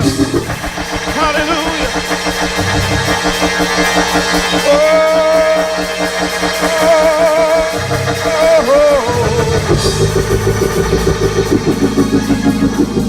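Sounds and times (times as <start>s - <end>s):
bass and drums: 0.0s - 13.0s
praise band music: 0.0s - 13.0s.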